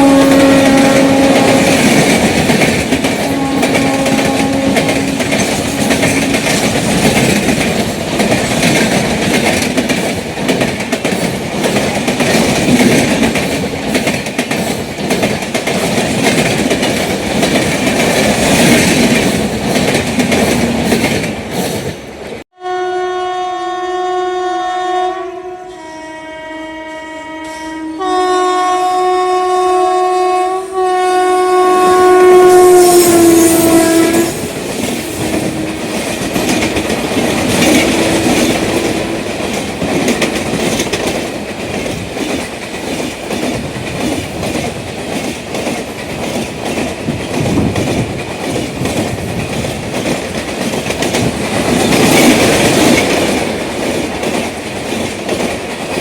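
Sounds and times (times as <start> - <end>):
locomotive horn blasts: 0.0 - 2.0, 3.2 - 6.4, 22.5 - 36.1, 37.7 - 39.4
train wheels on rails: 0.0 - 22.4, 30.8 - 56.0.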